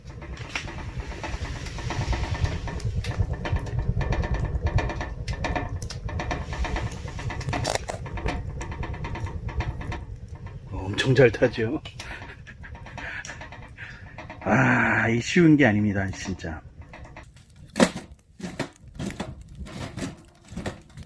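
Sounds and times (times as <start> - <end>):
logs crackling and popping: 0.0 - 21.0
low rumble of fire: 0.0 - 21.0.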